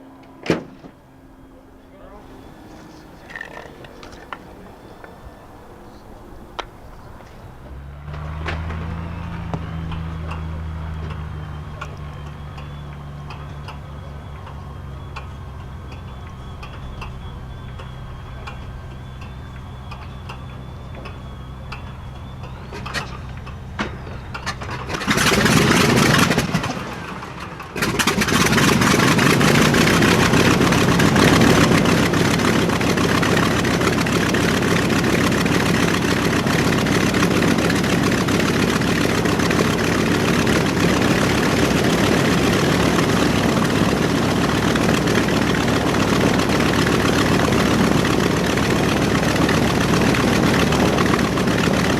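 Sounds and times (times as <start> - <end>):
radial aircraft engine starting: 0.0 - 51.9.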